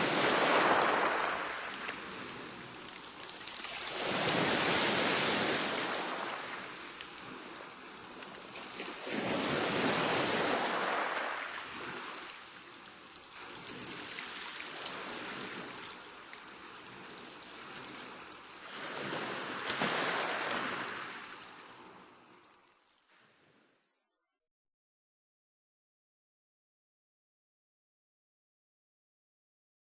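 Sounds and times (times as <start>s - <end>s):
waves surging and breaking: 0.0s - 22.5s.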